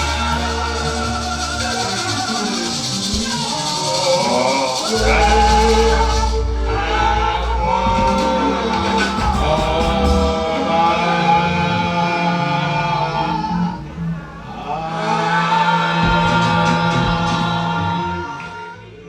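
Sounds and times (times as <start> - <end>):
instrumental accompaniment: 0.0 - 15.1
choir singing a hymn: 0.0 - 19.0.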